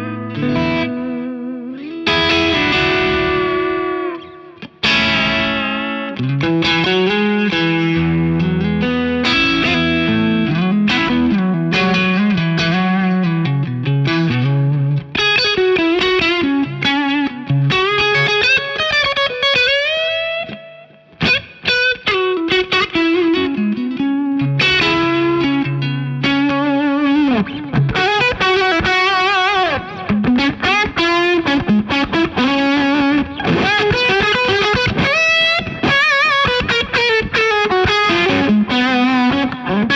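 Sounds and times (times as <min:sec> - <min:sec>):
electric guitar with effects: 0:00.0 - 0:39.9.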